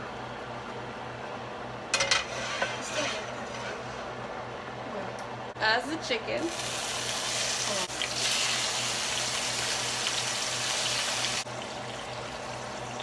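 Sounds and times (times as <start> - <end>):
chicken sizzling in oil: 6.4 - 13.0.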